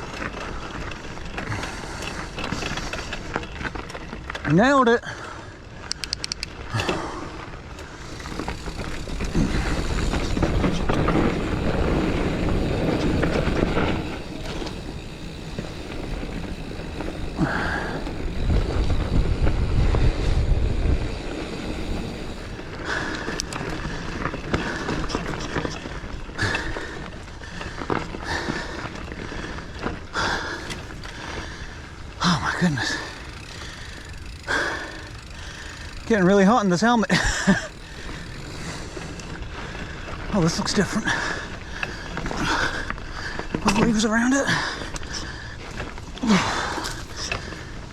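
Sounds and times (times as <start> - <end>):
bike rattling over ground: 0.0 - 47.9
bike tyres on loose soil: 0.0 - 47.9
wind rumble on microphone: 16.2 - 25.8.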